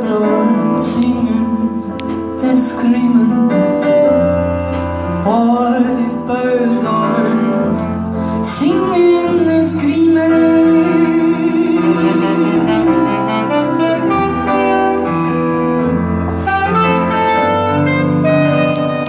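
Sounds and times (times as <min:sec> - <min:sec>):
lead instrument melody: 0:00.0 - 0:19.0
bass line: 0:09.1 - 0:19.0.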